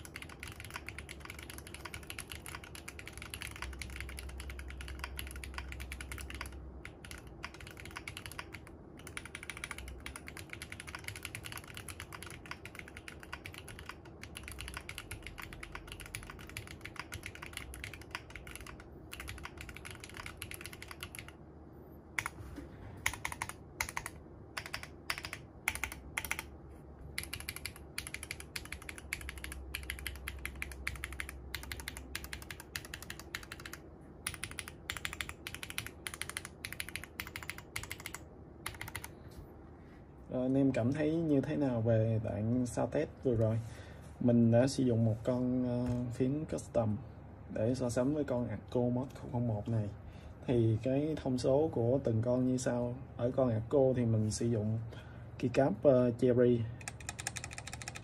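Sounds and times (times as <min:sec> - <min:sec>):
mechanical keyboard typing: 0:00.0 - 0:21.4, 0:22.2 - 0:22.4, 0:23.0 - 0:26.5, 0:27.2 - 0:39.2, 0:56.8 - 0:58.0.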